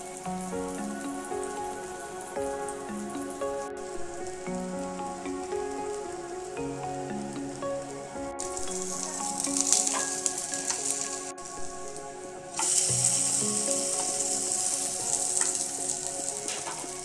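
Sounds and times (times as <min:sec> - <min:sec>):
food sizzling in a pan: 0:08.4 - 0:11.6, 0:12.5 - 0:17.0.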